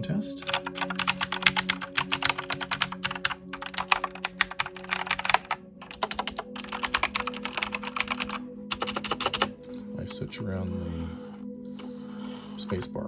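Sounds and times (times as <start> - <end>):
fast typing on mechanical keyboard: 0.4 - 9.5.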